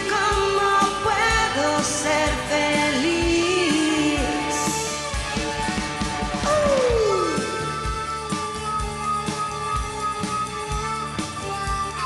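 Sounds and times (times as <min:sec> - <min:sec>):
woman singing: 0:00.0 - 0:05.1
guitar: 0:00.0 - 0:12.0
drum beat: 0:04.7 - 0:12.0.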